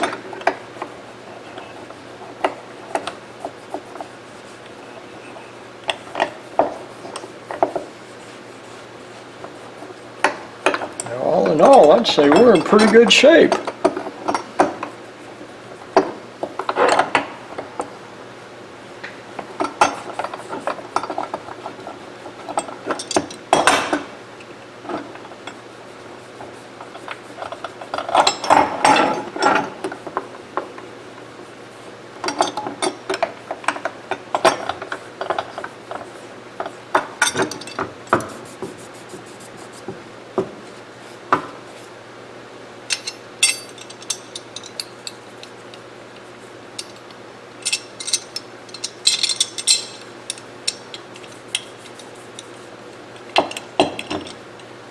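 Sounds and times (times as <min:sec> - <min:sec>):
metal parts clicking and clinking: 0:10.6 - 0:14.8, 0:37.0 - 0:38.3, 0:42.9 - 0:45.6, 0:46.8 - 0:52.5.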